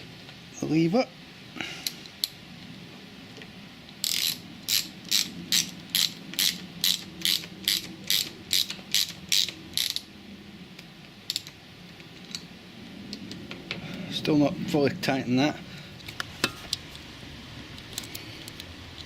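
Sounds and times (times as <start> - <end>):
ratchet wrench clicking: 4.0 - 10.1.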